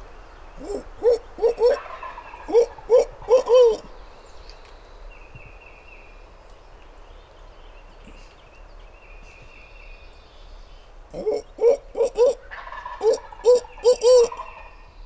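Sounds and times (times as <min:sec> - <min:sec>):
turkey gobbling: 0:00.6 - 0:04.0, 0:11.1 - 0:14.8.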